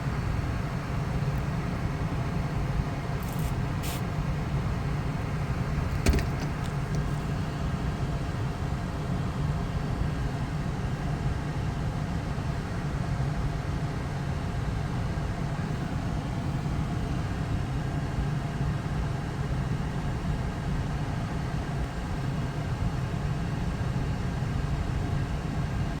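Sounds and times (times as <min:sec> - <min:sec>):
car engine idling: 0:00.0 - 0:09.0.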